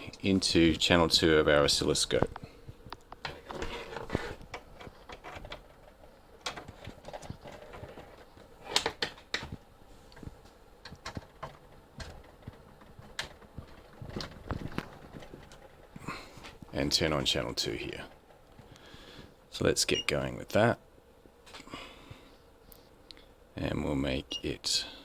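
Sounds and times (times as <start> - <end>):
cable clicks and light knocks: 2.1 - 17.0.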